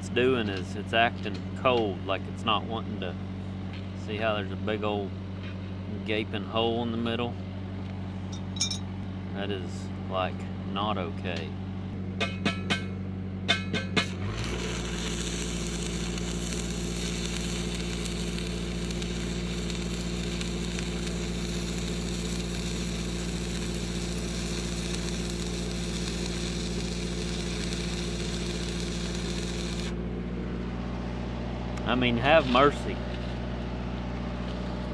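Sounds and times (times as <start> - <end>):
welding arc crackling: 13.5 - 30.0
welder engine running: 13.5 - 34.9.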